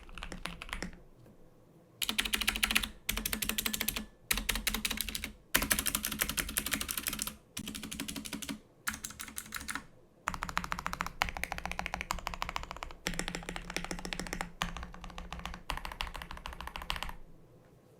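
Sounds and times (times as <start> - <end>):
fast typing on mechanical keyboard: 0.0 - 1.0, 2.0 - 17.2.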